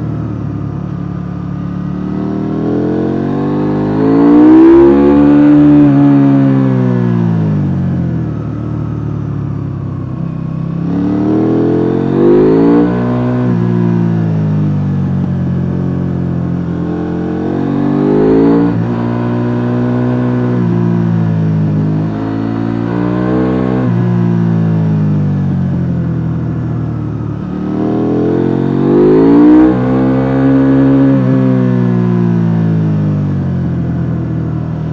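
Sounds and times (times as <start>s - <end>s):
motorcycle engine revving: 0.0s - 34.9s.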